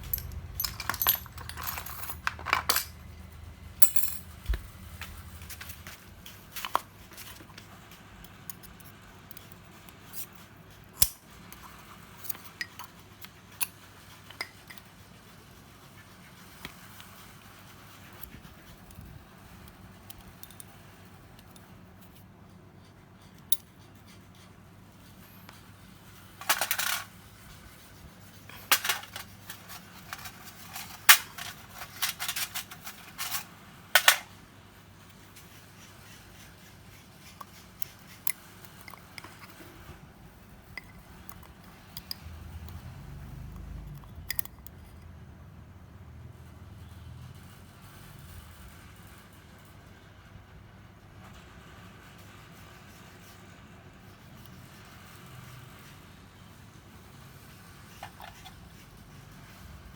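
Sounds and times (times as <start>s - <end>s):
metal tools clinking on surface: 0.0s - 4.6s.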